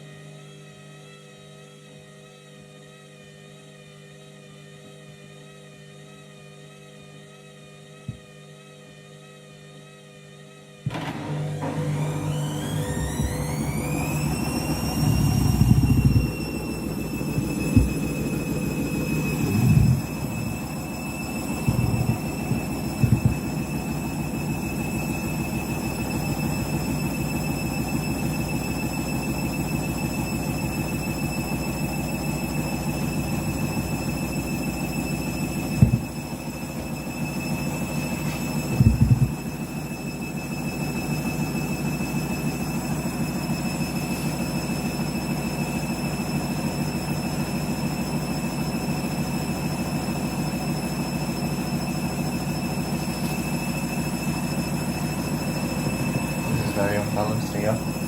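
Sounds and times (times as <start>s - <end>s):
washing machine motor whir: 6.5s - 58.0s
washing machine drum banging: 14.9s - 24.3s, 35.8s - 36.3s, 38.7s - 39.6s.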